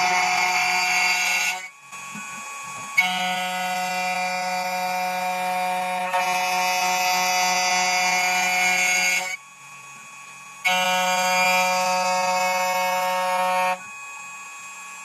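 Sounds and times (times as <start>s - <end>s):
key cutting machine whine: 0.0s - 15.0s.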